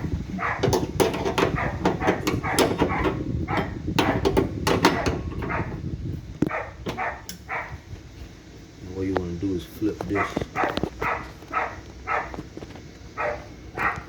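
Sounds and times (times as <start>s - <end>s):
dog barking: 0.4s - 0.7s, 1.5s - 3.8s, 5.5s - 5.8s, 6.5s - 7.8s, 10.1s - 12.4s, 13.2s - 14.0s.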